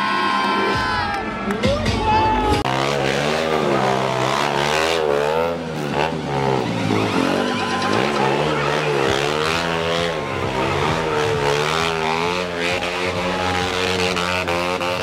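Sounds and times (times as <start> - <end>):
motorcycle engine revving: 2.6 - 15.0.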